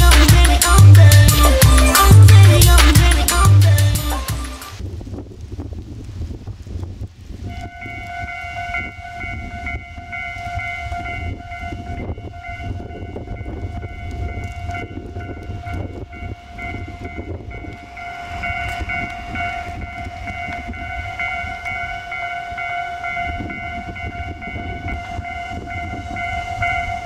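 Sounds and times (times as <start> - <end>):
level-crossing warning bell: 7.5 - 27.0.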